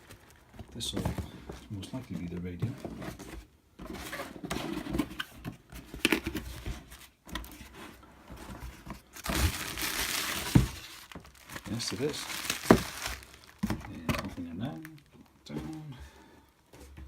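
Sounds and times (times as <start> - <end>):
packaging rustling and scraping: 0.0 - 15.9
packaging crinkling and tearing: 9.1 - 13.9.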